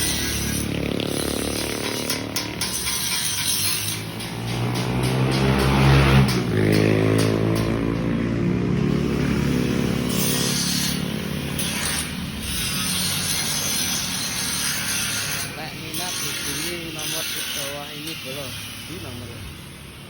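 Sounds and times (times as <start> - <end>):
engine running and revving: 0.0 - 15.8.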